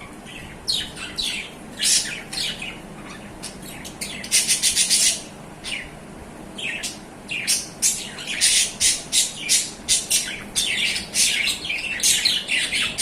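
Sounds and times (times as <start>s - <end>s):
budgerigars chirping and squawking: 0.0s - 6.0s, 6.6s - 13.0s.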